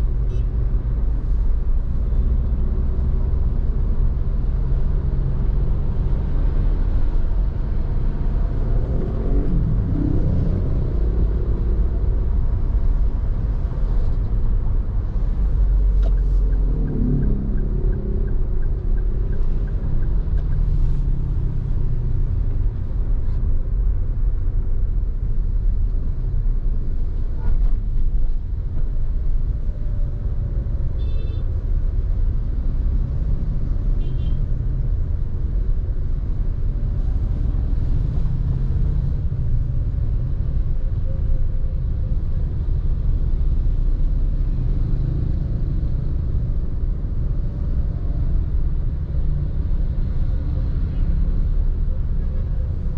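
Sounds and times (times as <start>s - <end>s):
car driving low rumble: 0.0s - 52.9s.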